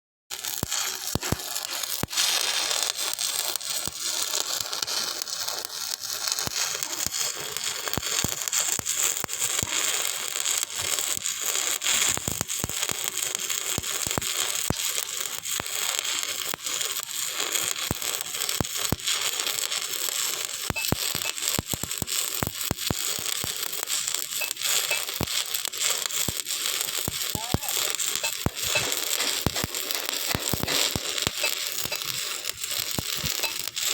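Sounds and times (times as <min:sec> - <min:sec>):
arc welding crackling hiss: 0:00.3 - 0:33.9
sharp welding pops: 0:00.3 - 0:33.9.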